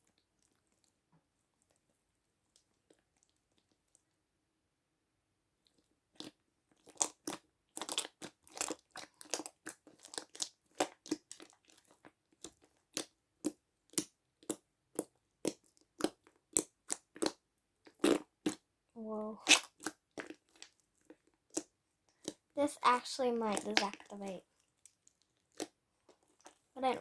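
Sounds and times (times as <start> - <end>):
slime squishing with sticky pops: 5.7 - 27.0.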